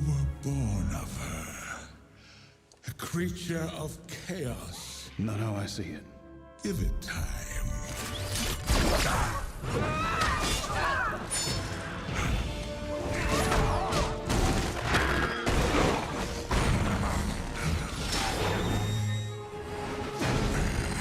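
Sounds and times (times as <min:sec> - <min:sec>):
background music: 0:00.0 - 0:21.0.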